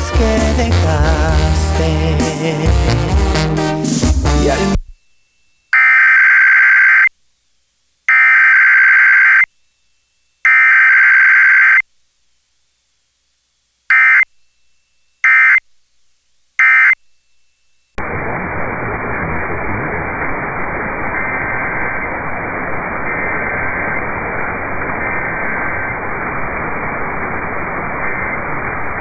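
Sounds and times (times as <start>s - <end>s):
radio static hiss: 3.8s - 29.0s
digital data tone bursts: 4.6s - 7.1s, 8.1s - 9.5s, 10.4s - 11.8s, 13.9s - 15.6s, 16.6s - 17.0s.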